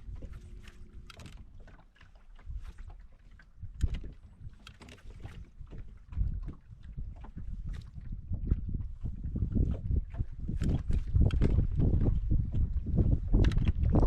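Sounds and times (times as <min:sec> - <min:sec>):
water slapping against boat hull: 0:00.0 - 0:14.0
wind gusting against microphone: 0:05.3 - 0:14.0.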